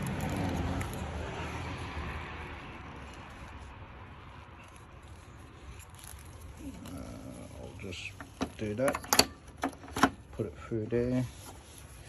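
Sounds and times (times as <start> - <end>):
car passing: 0.0 - 7.8.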